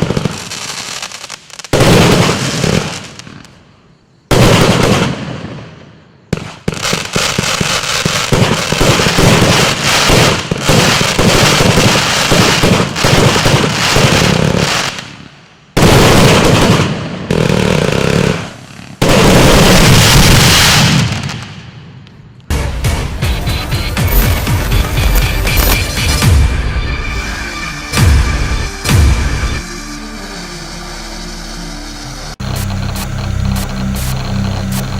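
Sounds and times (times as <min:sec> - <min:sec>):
firework cake rapid shots: 0:00.0 - 0:03.5, 0:04.3 - 0:21.8, 0:32.4 - 0:34.9
heavy firework salvos: 0:00.0 - 0:34.9.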